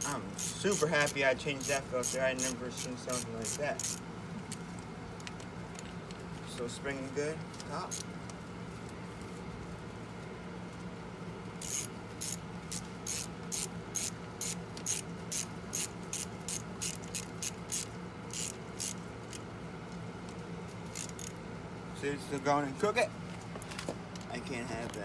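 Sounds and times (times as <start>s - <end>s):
ratchet wrench clicking: 0.0s - 4.0s, 7.9s - 8.1s, 11.6s - 19.4s, 20.9s - 21.4s
steady low hum: 0.0s - 25.0s.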